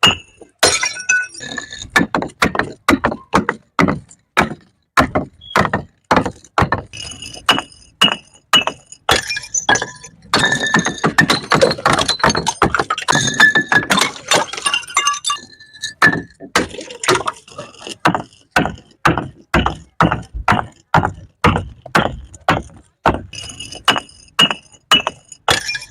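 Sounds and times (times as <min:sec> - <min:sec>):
glass shattering: 0:00.0 - 0:02.0, 0:06.9 - 0:17.8, 0:23.3 - 0:25.9
bottles knocking on steps: 0:00.0 - 0:25.9.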